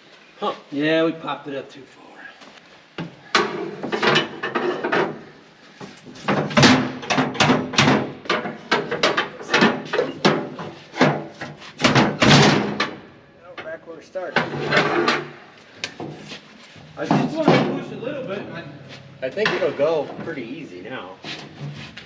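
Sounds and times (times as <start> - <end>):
metal scraping and rubbing: 14.4 - 15.4, 16.0 - 22.0.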